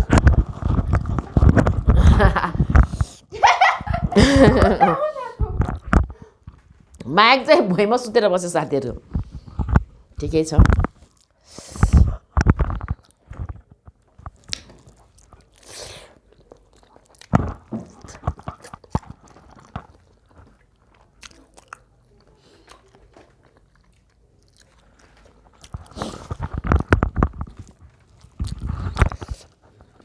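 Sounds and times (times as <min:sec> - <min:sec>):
chewing and crunching food: 0:00.0 - 0:03.3, 0:05.4 - 0:07.1, 0:09.0 - 0:30.0
mouth clicks and smacks: 0:00.0 - 0:03.3, 0:05.4 - 0:07.1, 0:09.0 - 0:29.6.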